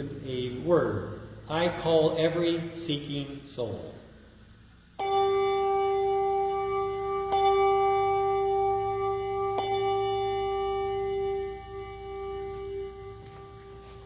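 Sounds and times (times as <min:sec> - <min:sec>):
church bell tolling: 0:05.0 - 0:14.0.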